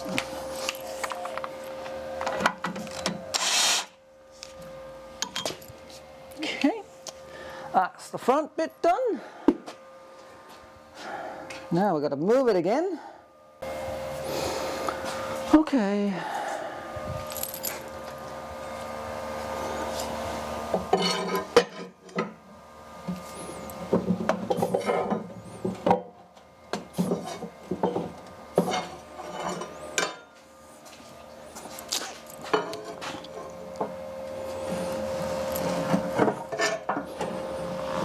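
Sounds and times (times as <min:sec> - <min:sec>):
faint steady hum: 0:00.0 - 0:38.0
metal tools clinking: 0:17.3 - 0:18.0.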